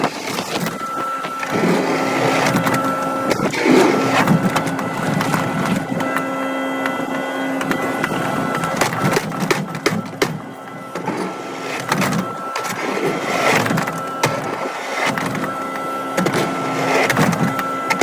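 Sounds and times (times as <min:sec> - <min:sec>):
scraping: 0:00.0 - 0:06.2
excavator engine and hydraulics whine: 0:00.0 - 0:18.0.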